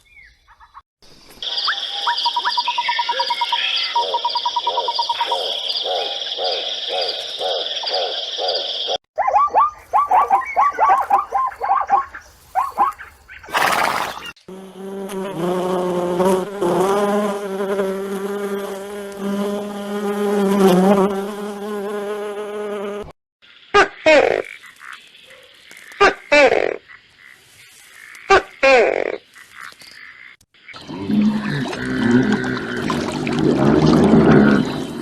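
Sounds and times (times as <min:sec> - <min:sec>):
insect buzz: 0:13.5 - 0:23.7.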